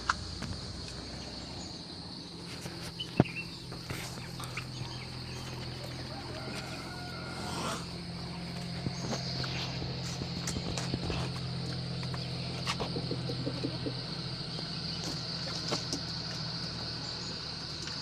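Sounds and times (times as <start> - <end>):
insects droning: 0.0 - 18.0
low steady hum: 0.0 - 18.0
chickens pecking clicks: 8.5 - 18.0.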